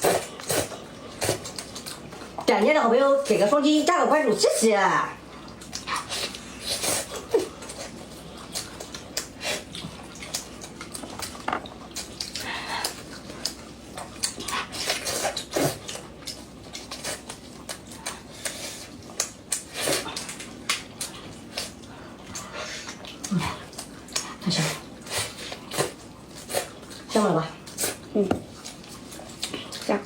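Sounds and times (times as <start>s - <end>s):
wet chewing and lip-smacking: 0.0s - 2.5s, 5.2s - 30.0s.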